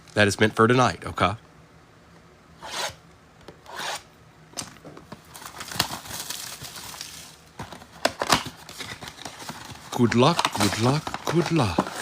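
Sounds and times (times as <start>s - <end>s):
plastic wrapping crinkling and tearing: 5.2s - 12.0s
cardboard handled: 7.6s - 12.0s.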